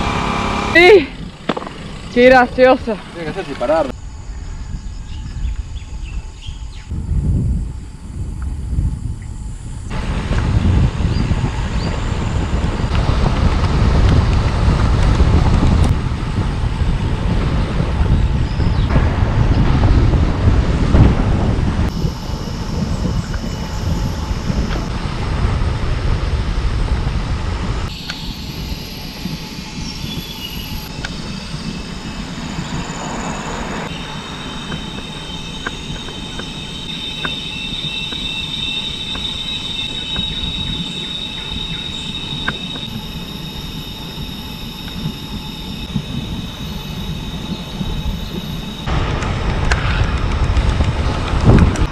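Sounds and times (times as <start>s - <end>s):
cicadas singing: 0.7s - 13.9s, 21.9s - 25.2s, 27.8s - 48.9s
loud low rumble: 6.9s - 51.9s.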